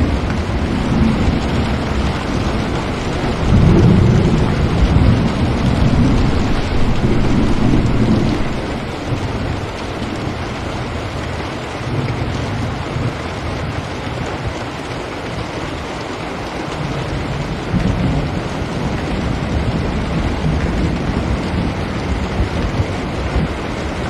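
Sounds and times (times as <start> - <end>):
low rumble: 0.0 - 13.1
steady rain falling: 0.0 - 24.0.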